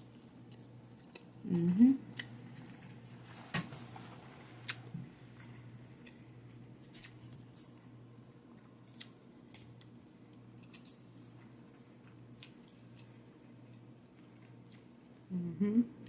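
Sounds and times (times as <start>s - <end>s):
person chewing and crunching: 2.1s - 3.1s, 4.6s - 7.9s, 8.5s - 15.0s.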